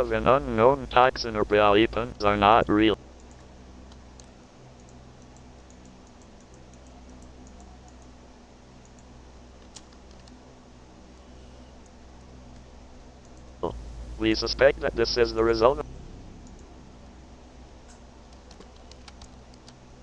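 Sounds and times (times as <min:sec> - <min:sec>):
steady low hum: 0:00.0 - 0:20.0
computer keyboard typing: 0:08.8 - 0:10.4, 0:18.3 - 0:19.8.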